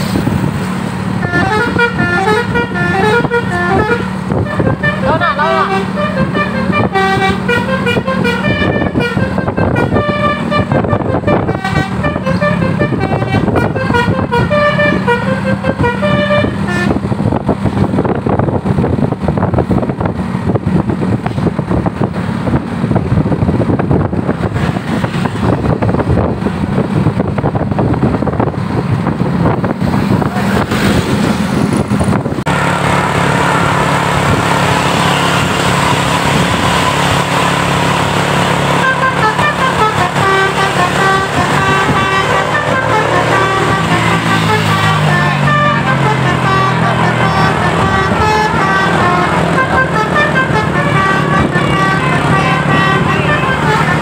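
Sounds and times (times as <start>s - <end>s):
bus engine running: 0.0s - 54.0s
road noise: 0.0s - 54.0s
multi-tone bus horn tune: 1.1s - 17.4s, 32.5s - 54.0s.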